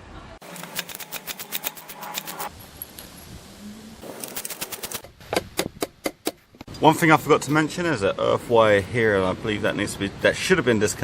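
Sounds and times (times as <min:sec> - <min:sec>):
ratchet wrench clicking: 0:00.6 - 0:02.5.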